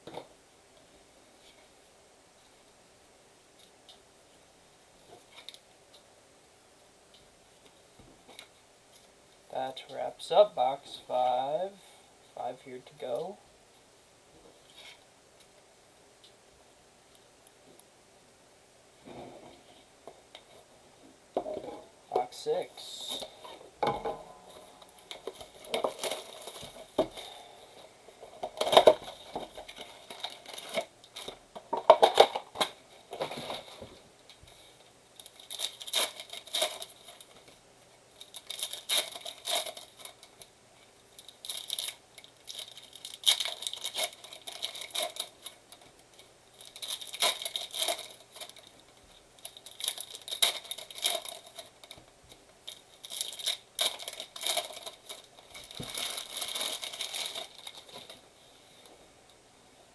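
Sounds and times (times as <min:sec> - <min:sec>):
wrappers crinkling: 0:22.8 - 0:58.4
card packs tearing open: 0:25.1 - 0:27.5, 0:35.2 - 0:37.4, 0:38.2 - 0:40.3, 0:41.2 - 0:45.6, 0:46.6 - 0:48.7, 0:49.4 - 0:52.0, 0:52.7 - 0:58.2.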